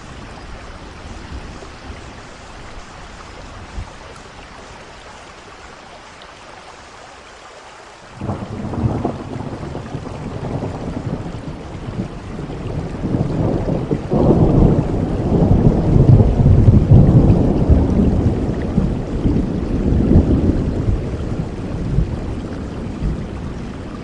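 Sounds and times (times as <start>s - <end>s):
steady rain: 0.0s - 24.0s
thunder rumbling: 8.2s - 24.0s.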